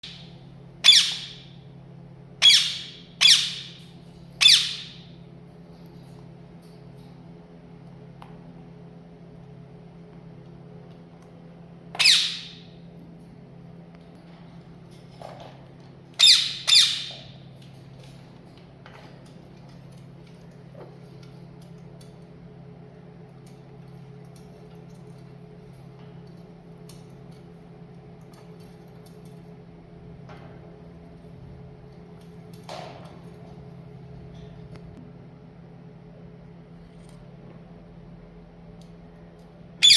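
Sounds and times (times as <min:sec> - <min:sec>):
parrot squawking: 0:00.8 - 0:01.5, 0:02.4 - 0:03.8, 0:04.4 - 0:05.0, 0:12.0 - 0:12.7, 0:16.2 - 0:17.3.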